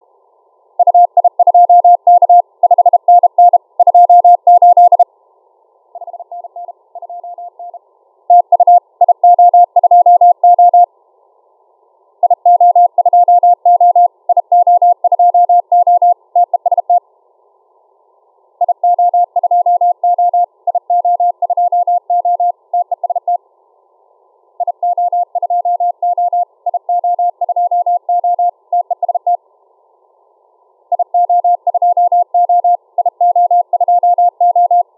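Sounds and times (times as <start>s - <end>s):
morse code tone: 0.8s - 5.0s, 6.0s - 10.9s, 31.0s - 34.8s.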